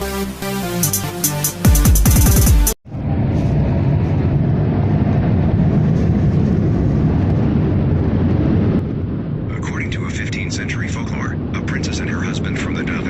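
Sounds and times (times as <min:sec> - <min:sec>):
electronic music: 0:00.0 - 0:02.8
steady low rumbling noise: 0:02.8 - 0:13.0.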